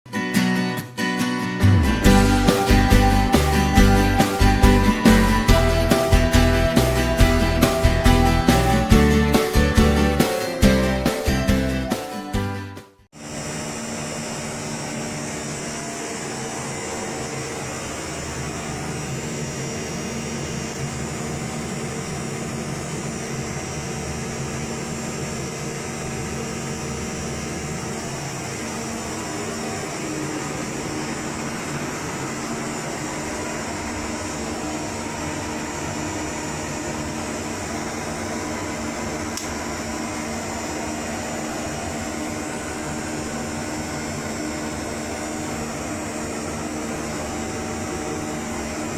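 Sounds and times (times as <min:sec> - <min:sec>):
low electrical drone: 0:01.6 - 0:11.1, 0:13.2 - 0:48.9
cooling fans whirring: 0:13.2 - 0:48.9.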